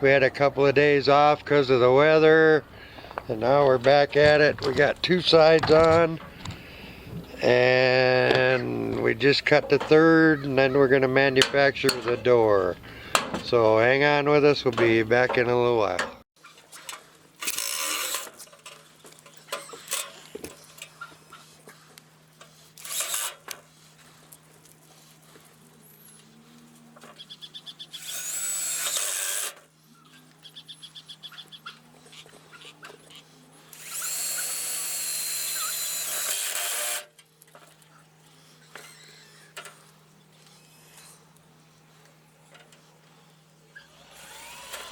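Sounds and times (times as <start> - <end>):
power drill driving screws into metal: 17.4 - 18.7, 19.4 - 20.6, 22.8 - 23.6, 28.0 - 29.7, 33.7 - 37.2, 43.9 - 44.9.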